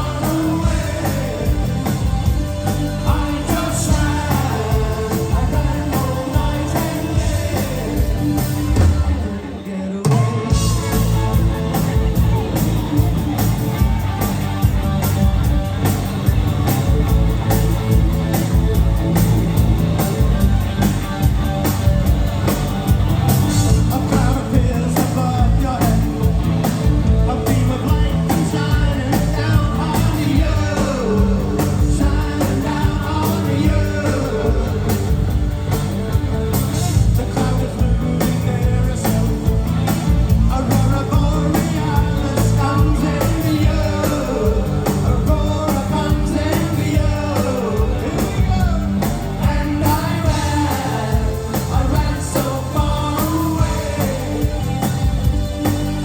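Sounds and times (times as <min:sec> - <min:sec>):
lead vocal singing: 0:00.0 - 0:12.5, 0:23.5 - 0:35.5, 0:36.8 - 0:55.4
rock band playing: 0:00.0 - 0:56.0.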